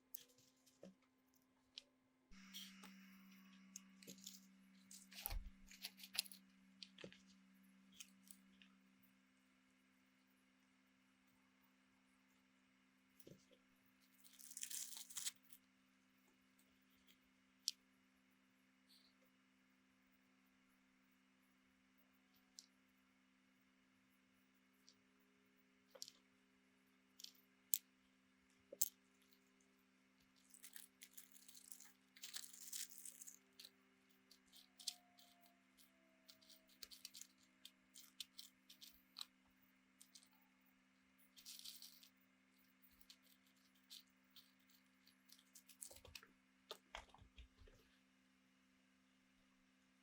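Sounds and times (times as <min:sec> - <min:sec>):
small tools clicking and tapping: 0:30.4 - 0:39.4.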